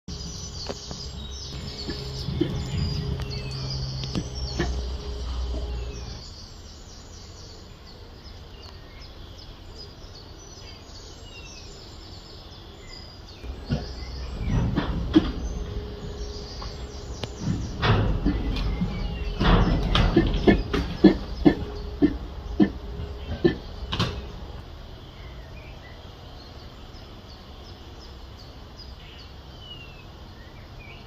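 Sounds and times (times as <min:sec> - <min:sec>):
small birds chirping: 0:00.0 - 0:31.0
low rumble with hum: 0:00.1 - 0:31.0.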